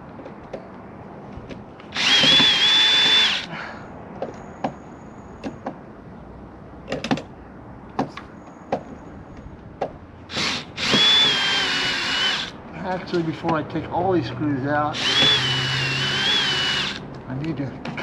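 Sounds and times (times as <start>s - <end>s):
cordless drill whining: 2.0s - 3.5s, 10.3s - 12.6s, 15.0s - 17.0s.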